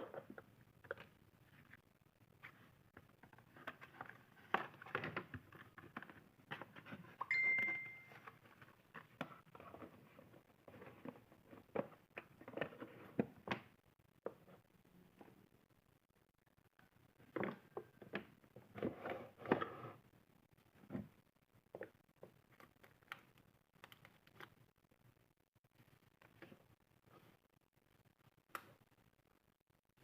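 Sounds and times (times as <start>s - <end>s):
brief high tone: 7.2s - 8.3s.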